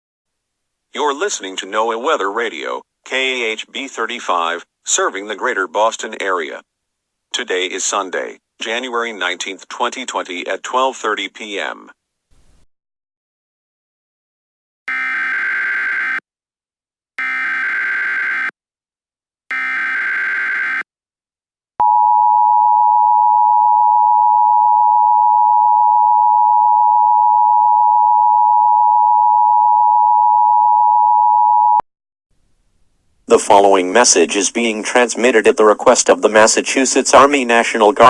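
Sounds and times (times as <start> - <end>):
short digital data buzzing bursts: 17.2 - 18.5, 19.5 - 20.8
steady warning tone: 17.2 - 18.5, 19.5 - 20.8.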